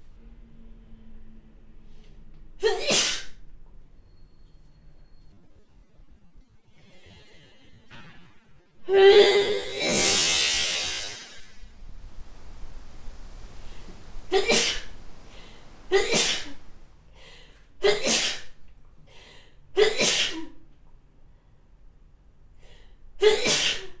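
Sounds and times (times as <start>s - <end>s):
woman sneezing: 2.6s - 3.3s, 13.7s - 16.8s, 17.8s - 18.4s, 19.8s - 20.6s, 23.2s - 24.0s
faint breaths: 10.0s - 17.7s.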